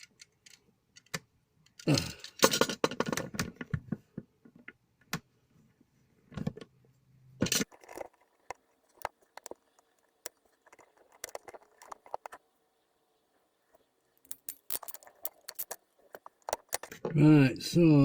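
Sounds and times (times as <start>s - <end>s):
hands working electrical wires: 7.5s - 17.0s.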